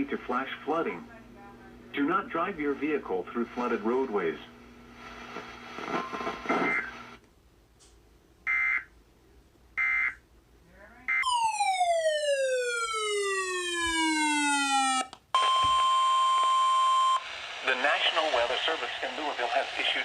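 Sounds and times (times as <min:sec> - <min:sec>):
steady high alert tone: 0:11.1 - 0:15.7
electronic tone sliding down: 0:11.2 - 0:17.2.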